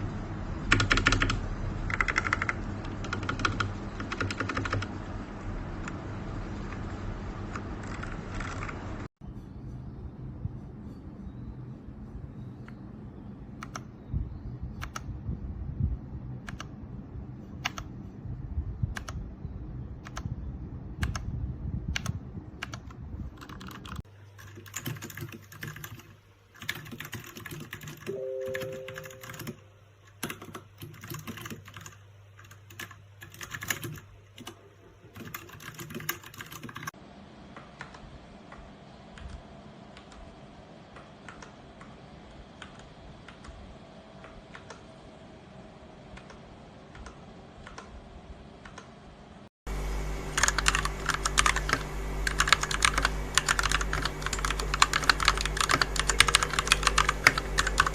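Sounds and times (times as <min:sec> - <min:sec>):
mechanical keyboard typing: 0:00.7 - 0:04.9, 0:07.5 - 0:08.8, 0:13.6 - 0:13.9, 0:14.8 - 0:15.1, 0:16.4 - 0:16.7, 0:17.6 - 0:17.9, 0:18.9 - 0:19.2, 0:20.0 - 0:20.3, 0:21.0 - 0:21.3, 0:21.9 - 0:37.0, 0:50.4 - 0:57.9.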